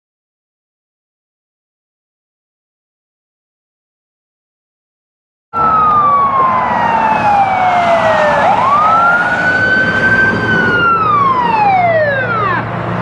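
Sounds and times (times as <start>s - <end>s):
fire truck siren wailing: 5.6s - 13.0s
traffic noise: 5.6s - 13.0s.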